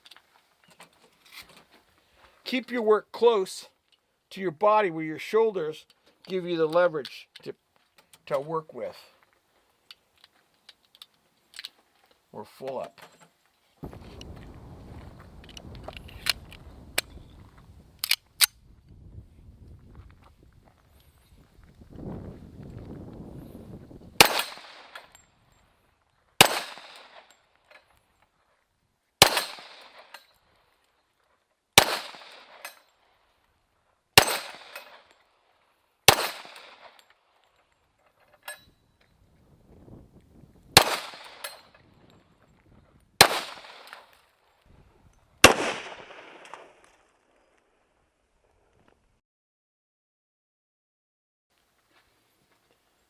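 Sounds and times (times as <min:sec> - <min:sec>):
pistol shots with echo: 0:24.2 - 0:25.0, 0:26.4 - 0:27.3, 0:29.2 - 0:30.1, 0:31.8 - 0:32.6, 0:34.2 - 0:35.1, 0:36.1 - 0:37.0, 0:40.8 - 0:41.6, 0:43.2 - 0:44.1, 0:45.4 - 0:46.8.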